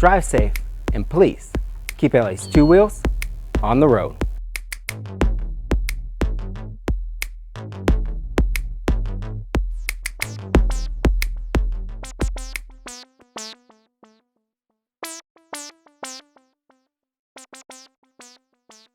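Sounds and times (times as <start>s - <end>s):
heavy synth bass: 0.0s - 4.4s, 5.0s - 12.9s
plucked synth notes: 0.0s - 4.4s
drum machine beat: 0.0s - 12.8s.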